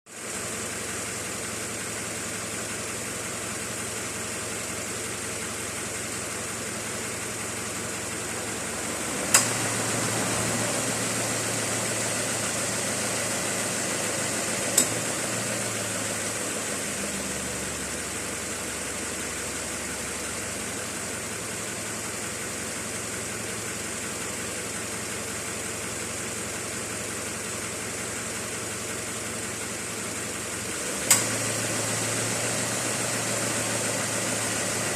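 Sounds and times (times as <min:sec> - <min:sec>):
car engine idling: 0:00.1 - 0:34.9
compressor clutch clicking: 0:09.2 - 0:09.9, 0:14.6 - 0:15.2, 0:31.0 - 0:31.5.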